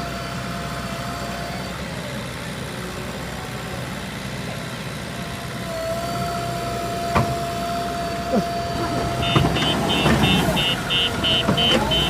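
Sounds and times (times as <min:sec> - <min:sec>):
heavy machinery engine running: 0:00.0 - 0:12.0.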